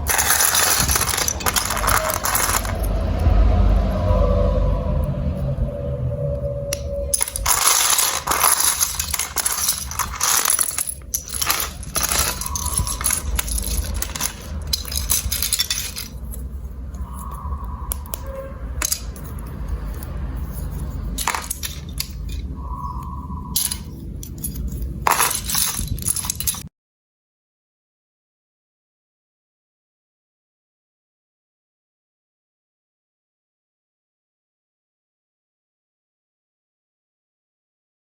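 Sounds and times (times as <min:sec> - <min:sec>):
marbles rolling and clattering: 0:00.0 - 0:03.3, 0:06.7 - 0:26.7.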